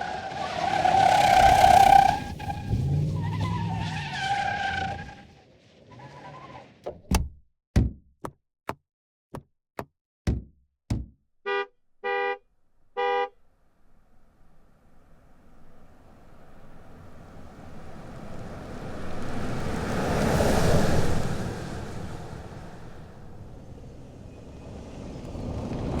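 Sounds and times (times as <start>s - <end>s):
truck engine: 0.0s - 6.7s, 13.0s - 26.0s
tire squeal: 0.0s - 6.8s, 19.4s - 26.0s
truck horn honks: 11.5s - 13.4s.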